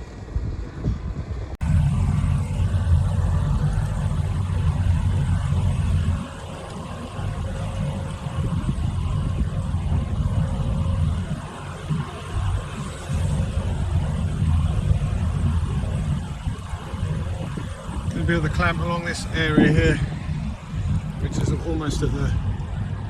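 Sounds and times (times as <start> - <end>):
diesel machinery engine rumble: 0.0 - 23.0
wind buffeting: 0.0 - 23.0.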